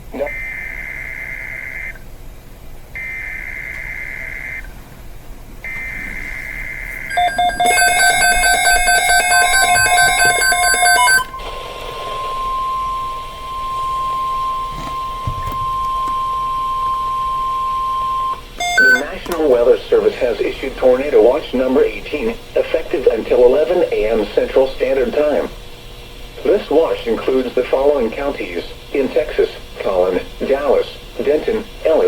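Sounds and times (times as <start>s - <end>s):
steady warning alarm tone: 0.2s - 2.0s, 3.0s - 4.7s, 5.6s - 19.2s
rapid electronic beeping: 5.7s - 19.2s
buzzy digital data bursts: 5.8s - 15.2s.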